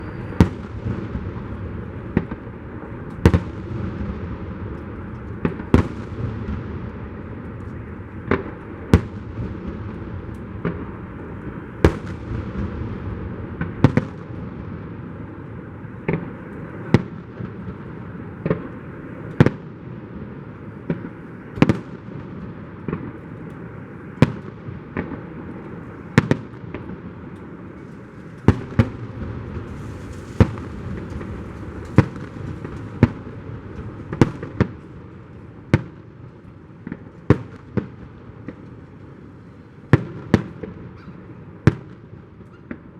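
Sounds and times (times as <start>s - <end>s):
firework shells bursting with bangs: 0.0s - 14.6s, 20.8s - 38.9s
rumbling crackle of fireworks: 0.0s - 42.9s.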